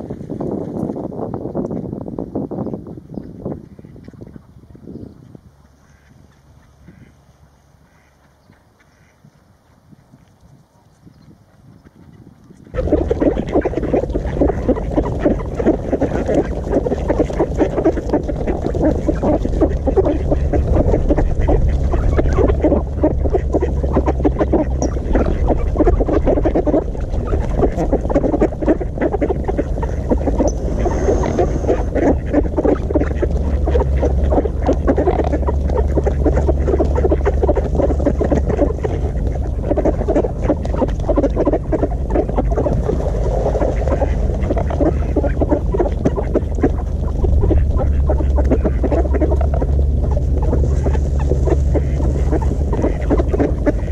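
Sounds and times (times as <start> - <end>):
ducks quacking: 5.6 - 9.4, 12.0 - 53.9
low rumble: 12.6 - 53.9.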